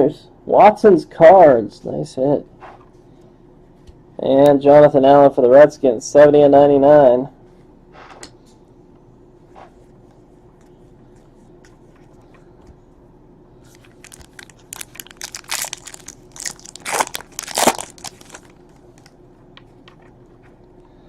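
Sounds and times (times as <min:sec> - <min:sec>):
wrapper crinkling and tearing: 0:13.7 - 0:19.1.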